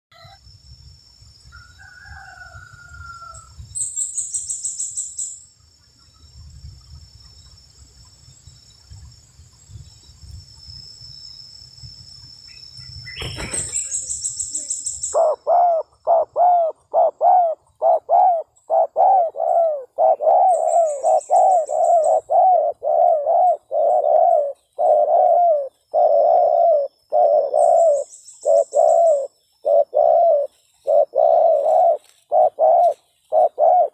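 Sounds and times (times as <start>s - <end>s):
high chirping trills: 9.6s - 33.9s
dove cooing: 14.6s - 33.9s.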